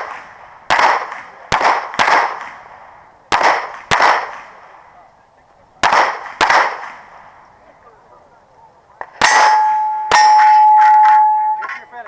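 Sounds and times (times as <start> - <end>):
pistol shots with echo: 0.0 - 5.0, 5.8 - 7.4, 9.0 - 11.8.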